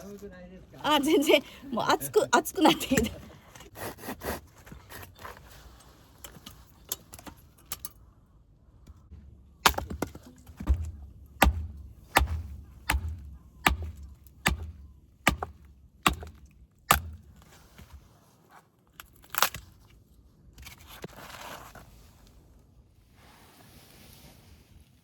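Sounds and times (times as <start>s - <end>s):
axe chopping firewood: 9.4s - 17.5s.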